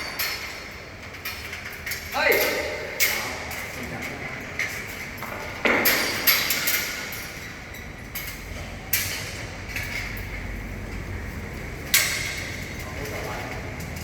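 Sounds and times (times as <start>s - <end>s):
metal scaffolding clanking: 0.0s - 14.0s.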